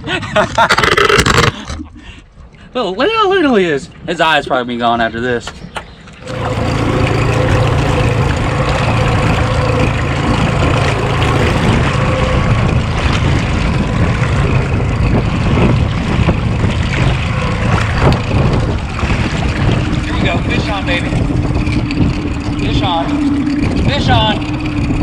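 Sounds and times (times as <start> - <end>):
water noise: 0.4 - 2.6, 6.0 - 25.0
outboard motor drone: 6.0 - 25.0
wind noise: 6.2 - 25.0.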